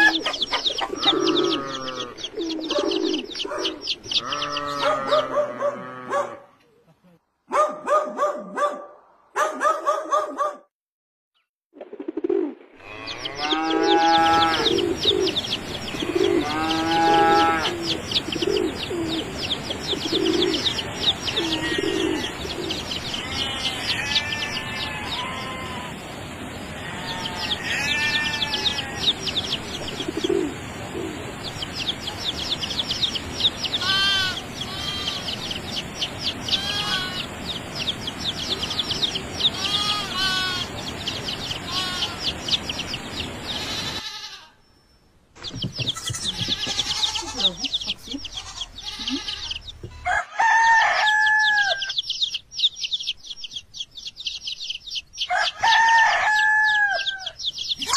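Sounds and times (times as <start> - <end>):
rooster crowing: 0.0 - 2.8, 4.2 - 6.3, 13.0 - 14.8, 16.2 - 18.0, 26.8 - 29.1, 49.1 - 52.0, 55.3 - 57.9
chickens calling: 0.0 - 6.6, 11.8 - 44.5, 45.4 - 57.9
dense high-pitched chirping: 45.4 - 50.0, 51.0 - 55.8, 56.7 - 57.9.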